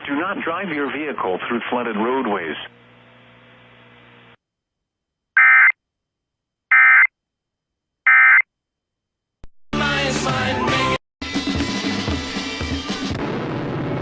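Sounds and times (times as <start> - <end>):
music: 9.7 - 14.0.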